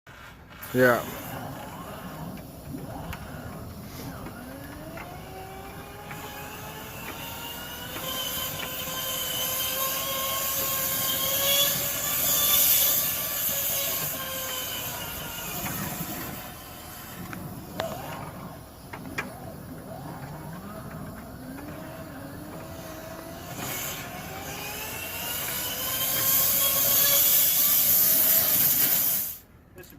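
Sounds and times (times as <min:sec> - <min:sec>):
electric motor winding up: 0:00.2 - 0:29.4.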